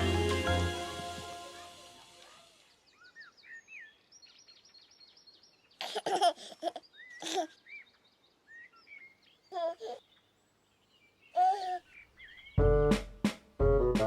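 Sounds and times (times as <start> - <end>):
music: 0.0 - 2.2, 12.6 - 14.0
songbirds chirping: 2.1 - 12.8
high-voiced laughter: 5.8 - 7.5.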